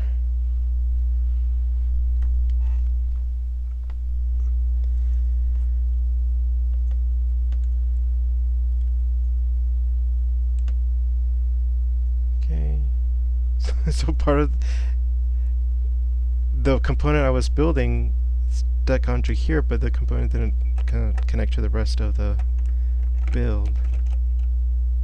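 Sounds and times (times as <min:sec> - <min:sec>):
low electrical hum: 0:00.0 - 0:25.0
faint clicks: 0:06.7 - 0:07.8, 0:10.5 - 0:10.8.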